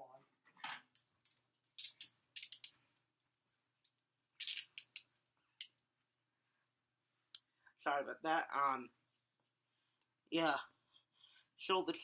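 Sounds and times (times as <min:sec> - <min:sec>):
metal handcuffs clinking: 0:01.0 - 0:02.8, 0:03.8 - 0:05.8.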